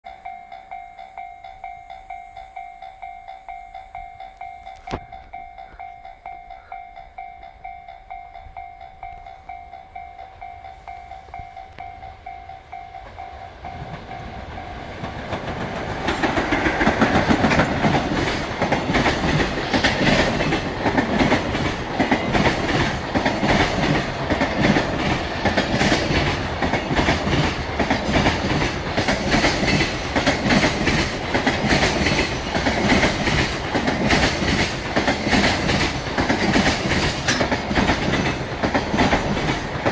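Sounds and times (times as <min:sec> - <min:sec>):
level crossing warning bell: 0:00.0 - 0:39.9
freight train passing: 0:00.1 - 0:39.9
wheels clattering over rail joints: 0:13.1 - 0:39.9.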